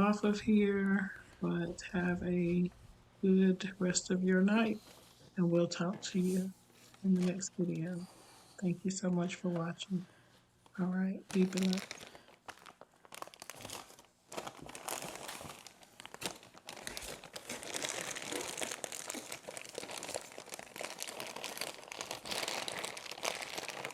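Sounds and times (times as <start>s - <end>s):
rustling and crinkling: 9.0s - 23.9s.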